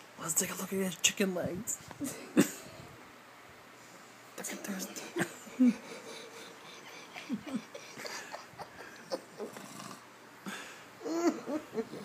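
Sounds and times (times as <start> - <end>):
man snoring in snorts: 9.5 - 10.0.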